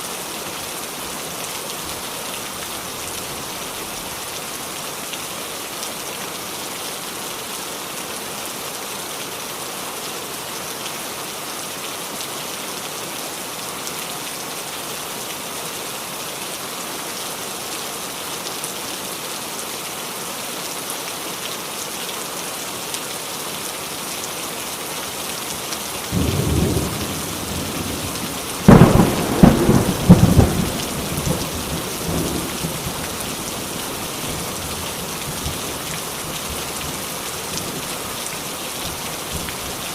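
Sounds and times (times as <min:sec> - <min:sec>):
heavy rain falling: 0:00.0 - 0:39.9
loud crackling thunderclap: 0:26.1 - 0:33.1
low rumble of thunder: 0:26.1 - 0:33.1.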